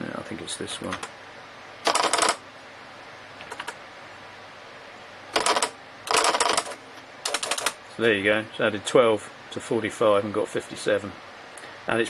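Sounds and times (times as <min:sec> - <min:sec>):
plotter clicking and rattling: 0:01.9 - 0:02.4, 0:05.4 - 0:07.8.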